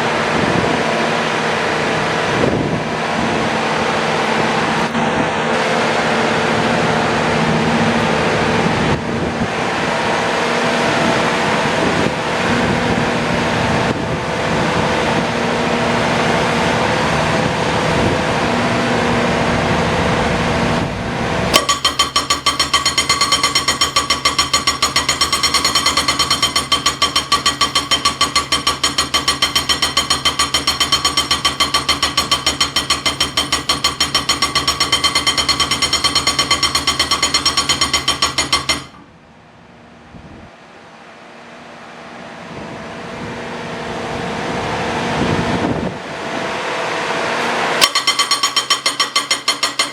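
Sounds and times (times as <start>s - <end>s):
loud machine noise: 9.7s - 39.1s, 47.4s - 49.9s
hydraulic breaker hammering: 21.5s - 39.1s, 47.4s - 49.9s.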